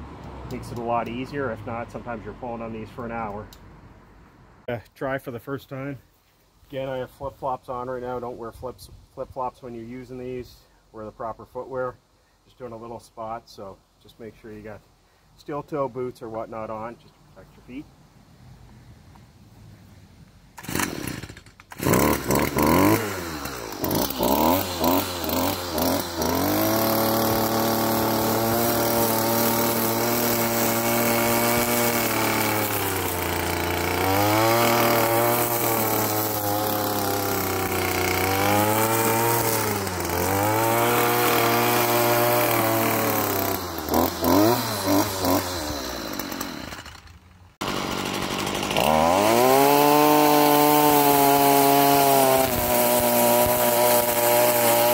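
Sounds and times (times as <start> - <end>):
string trimmer engine revving: 20.6 - 54.9.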